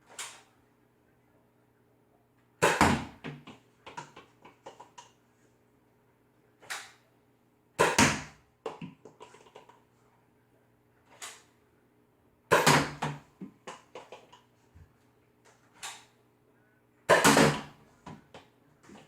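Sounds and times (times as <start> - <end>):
toy blaster shot: 17.1 - 17.7.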